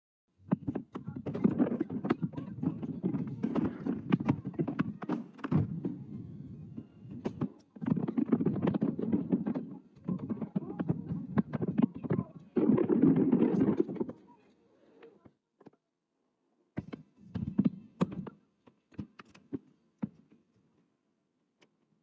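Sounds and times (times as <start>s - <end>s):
fireworks bangs and crackles: 0.6s - 14.2s.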